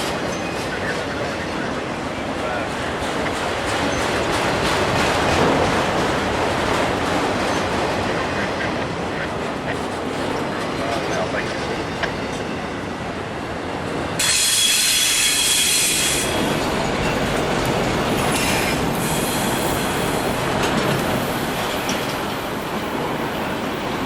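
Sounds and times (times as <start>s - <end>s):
freight train rumbling on rails: 0.0s - 24.0s
high-pitched wheel squeal: 14.2s - 16.6s.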